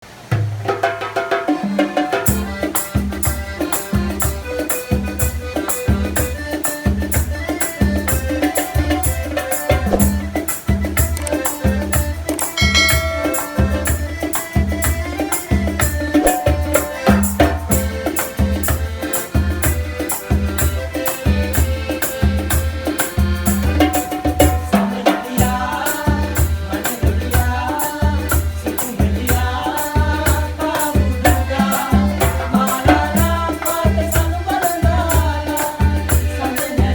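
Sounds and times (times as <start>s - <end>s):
fast shaker rhythm: 0.7s - 36.9s
bass beat: 9.8s - 15.2s, 15.9s - 18.5s
melody lines: 12.2s - 15.5s, 16.1s - 18.3s.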